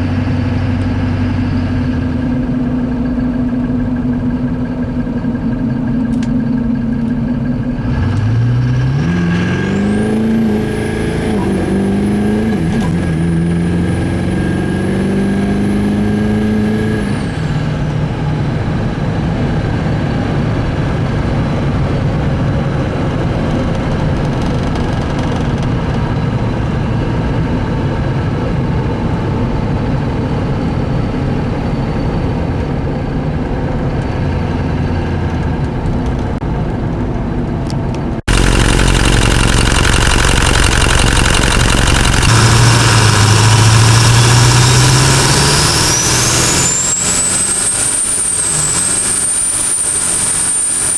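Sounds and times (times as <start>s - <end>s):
pickup engine accelerating: 0.0s - 50.9s
road noise: 0.0s - 50.9s
turbocharger whistle: 0.1s - 17.6s, 38.3s - 50.9s.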